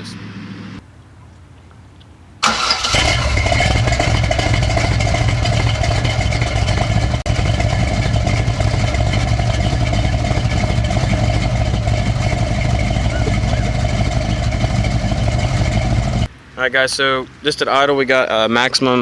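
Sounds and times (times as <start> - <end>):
car engine starting and idling: 2.4 - 16.3.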